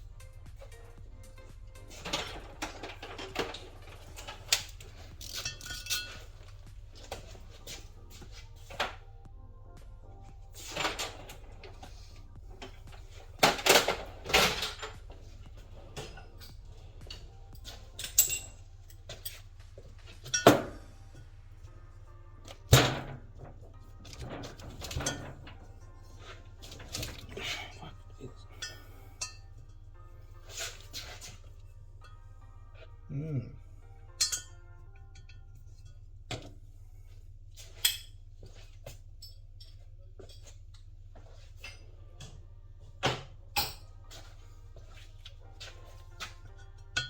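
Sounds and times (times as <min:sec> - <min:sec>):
tools and parts clattering: 0:00.6 - 0:09.1, 0:10.3 - 0:21.7, 0:22.4 - 0:29.7, 0:30.4 - 0:32.2, 0:34.1 - 0:36.6, 0:37.6 - 0:47.0
metal parts clinking: 0:01.9 - 0:06.5, 0:16.0 - 0:19.4.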